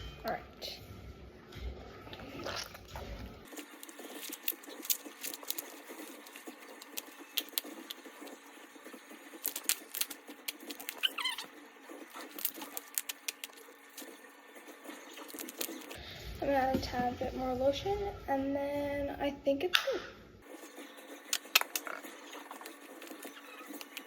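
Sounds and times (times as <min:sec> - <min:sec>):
slime squeak: 0:09.5 - 0:13.6, 0:21.4 - 0:24.0.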